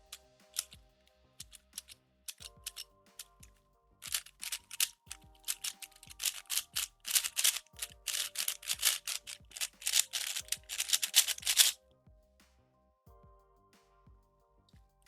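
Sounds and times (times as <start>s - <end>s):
plastic puzzle cube clicking: 4.1s - 11.8s.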